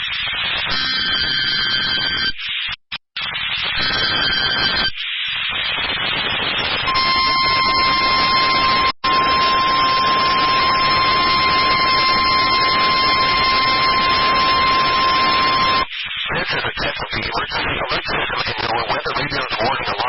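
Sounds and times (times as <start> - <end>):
weather radio alarm tone: 0.8 - 2.4, 3.8 - 4.9, 6.8 - 15.9
radio static: 5.9 - 20.0.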